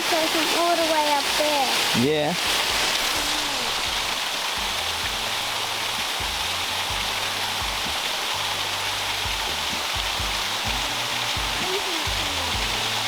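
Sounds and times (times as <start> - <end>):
falling water hiss: 0.0 - 13.0
background music: 2.7 - 13.0.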